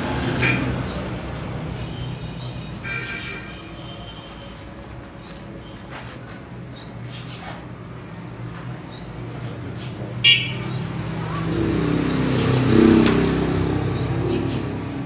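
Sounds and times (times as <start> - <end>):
vehicle engine passing by: 9.2 - 15.0.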